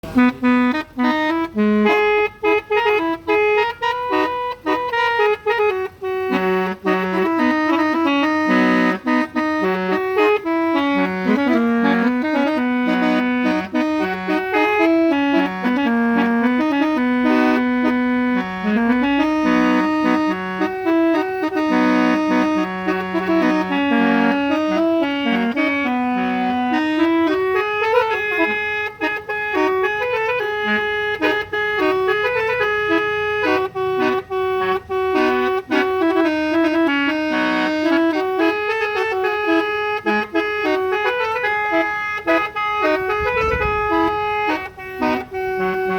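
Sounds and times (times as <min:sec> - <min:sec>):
reedy musical horn playing a tune: 0:00.0 - 0:45.9.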